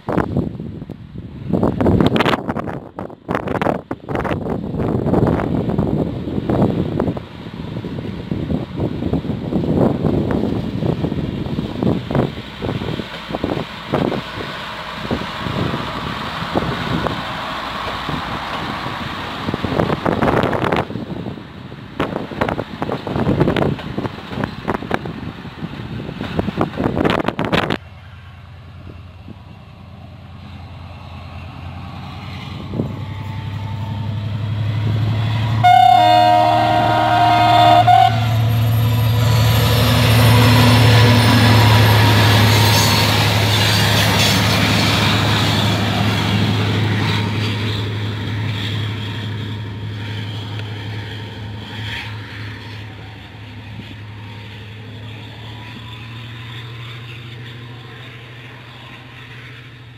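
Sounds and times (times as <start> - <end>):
train engine drone and wheels: 0.0 - 59.9
train horn: 35.5 - 38.5.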